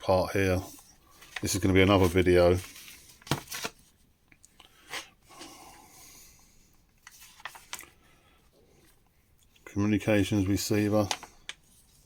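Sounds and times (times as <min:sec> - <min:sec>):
paper pages rustling: 0:00.5 - 0:04.0, 0:07.0 - 0:08.0, 0:08.8 - 0:12.0.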